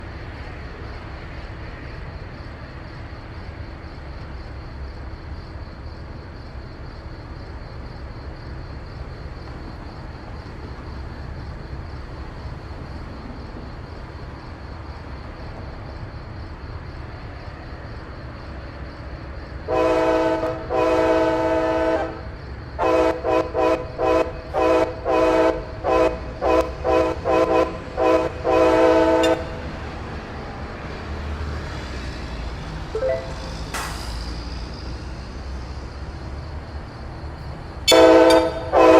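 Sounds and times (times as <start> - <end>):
train rumble: 0.0 - 38.9
train horn blasts: 19.7 - 22.2, 22.8 - 29.7, 37.9 - 38.9.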